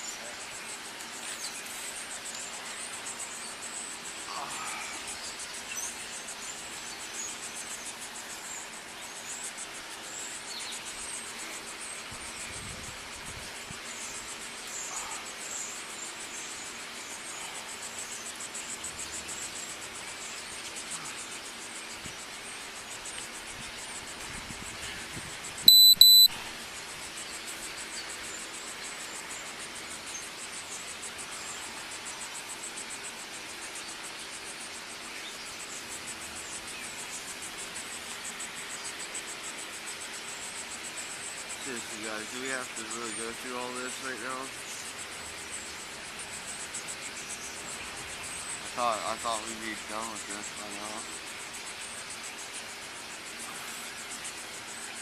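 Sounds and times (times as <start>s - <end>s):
insects chirring: 0.0s - 55.0s
high electronic beeps: 25.7s - 26.3s.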